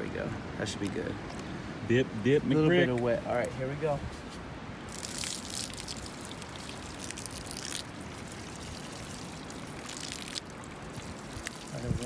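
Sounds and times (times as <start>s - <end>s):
water pouring and trickling: 4.8s - 12.0s.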